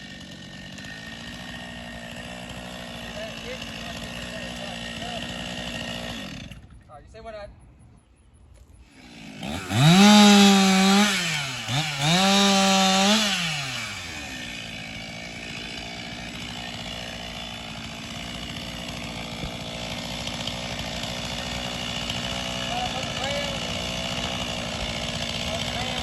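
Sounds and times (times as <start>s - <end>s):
chainsaw revving and idling: 0.0s - 6.8s, 8.8s - 26.0s.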